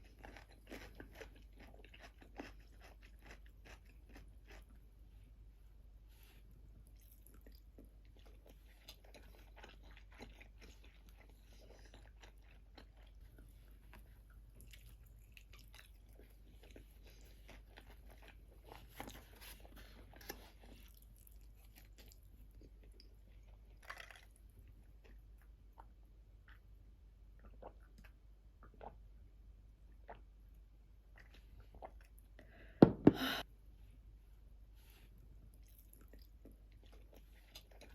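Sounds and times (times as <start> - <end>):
person chewing crunchy food: 0.0 - 5.0, 6.8 - 26.7, 35.5 - 37.9.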